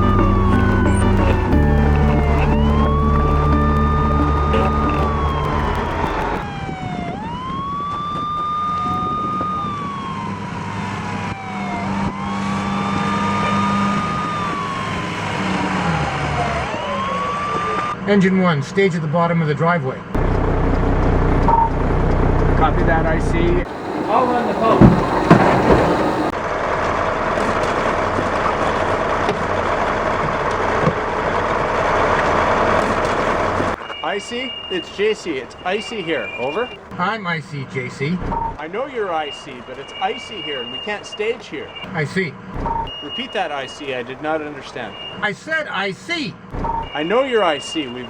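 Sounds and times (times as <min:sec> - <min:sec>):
vehicle engine running: 0:00.0 - 0:06.4, 0:20.2 - 0:33.9
fire engine siren wailing: 0:00.0 - 0:18.1, 0:20.2 - 0:36.9, 0:38.3 - 0:45.2, 0:46.5 - 0:48.0.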